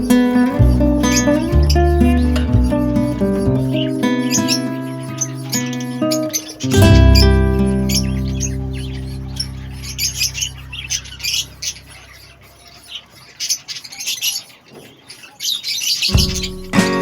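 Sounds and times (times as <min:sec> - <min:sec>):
budgerigars chirping: 0:00.0 - 0:17.0.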